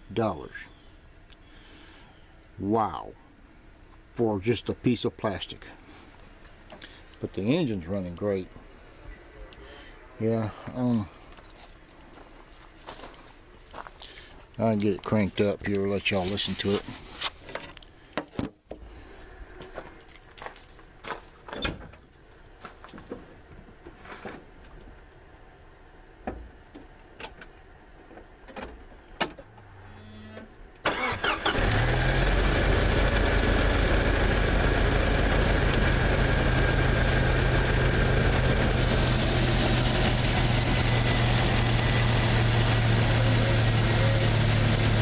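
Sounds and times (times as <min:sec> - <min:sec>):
car engine cranking and idling: 0:30.8 - 0:45.0.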